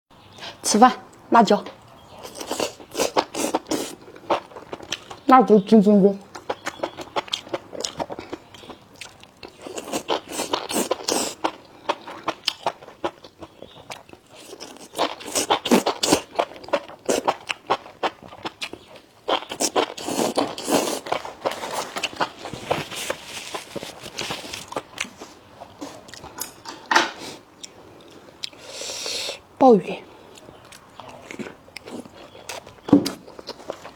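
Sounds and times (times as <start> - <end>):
person biting and chewing food: 6.3 - 25.2.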